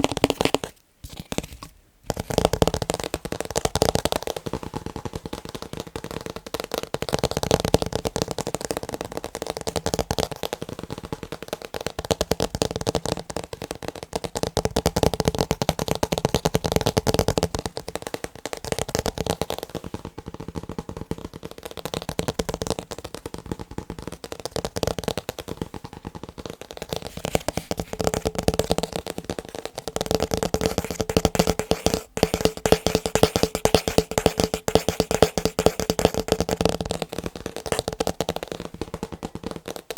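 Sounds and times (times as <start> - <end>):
rapid tapping on picture frames: 0.0 - 39.9.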